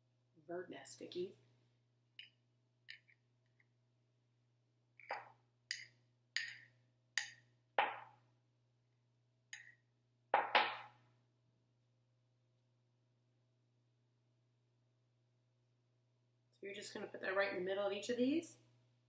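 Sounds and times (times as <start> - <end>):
teaspoon tapping and clinking: 5.7 - 7.4.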